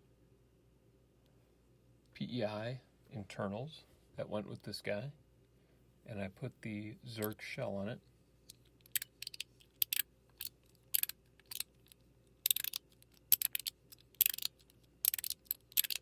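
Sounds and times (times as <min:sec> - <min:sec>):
fidget slider clicking: 0:08.9 - 0:11.7, 0:12.4 - 0:16.0.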